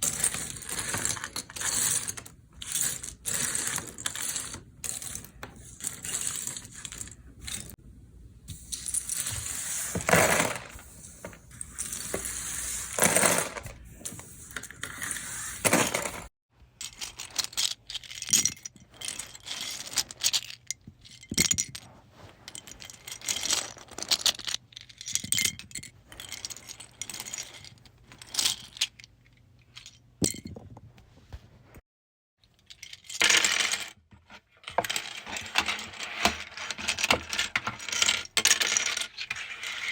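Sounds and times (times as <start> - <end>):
plastic bricks poured into a bin: 9.2 - 10.8.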